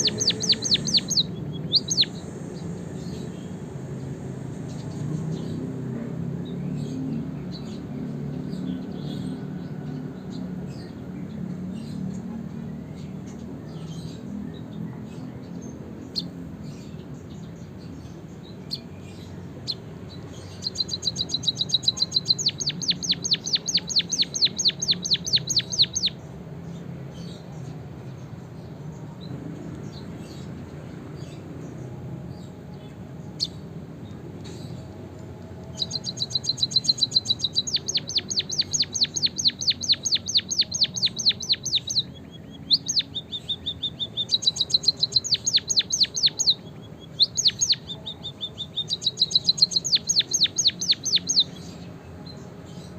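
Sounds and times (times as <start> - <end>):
finch singing high trill: 0.0 - 2.3, 20.4 - 26.2, 35.7 - 51.8.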